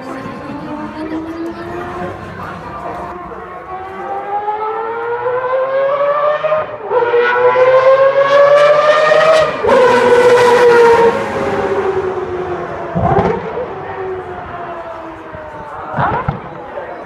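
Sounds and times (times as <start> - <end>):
racing engine wailing at full throttle: 0.0 - 17.0.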